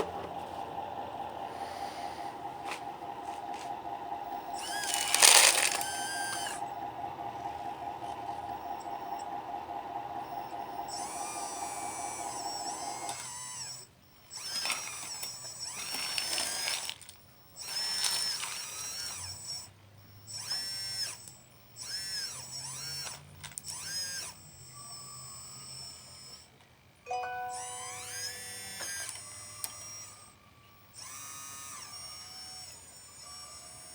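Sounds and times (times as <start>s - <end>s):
steady hum: 0.0s - 13.1s
small electric motors whining: 0.0s - 26.6s, 27.5s - 33.9s.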